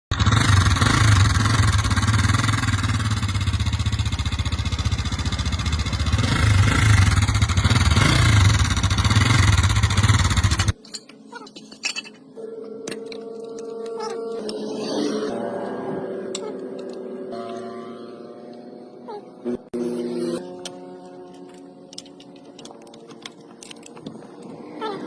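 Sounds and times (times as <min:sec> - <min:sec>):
motorcycle engine running: 0:00.1 - 0:10.8.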